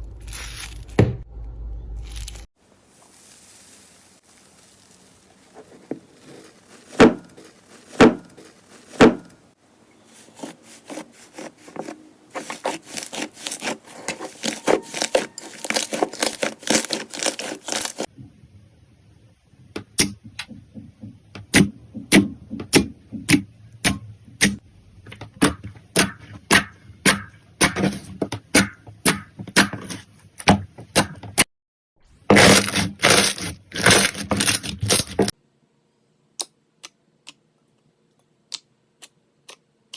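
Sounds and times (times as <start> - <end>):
slime popping and crackling: 14.4 - 18.1.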